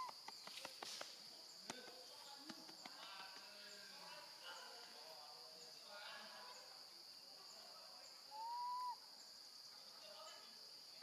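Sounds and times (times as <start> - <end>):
insects droning: 0.0 - 11.0
baby monkey whistle-like call: 8.3 - 9.0.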